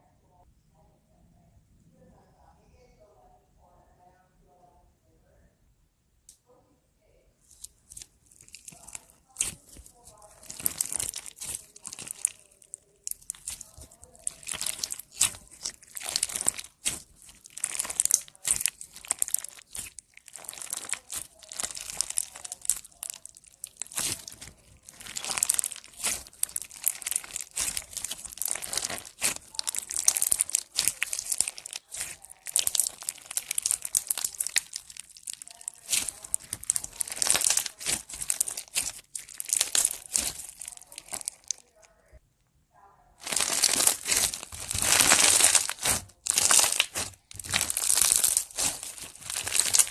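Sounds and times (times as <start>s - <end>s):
slime crackling and crinkling: 7.4s - 42.2s, 43.2s - 49.9s.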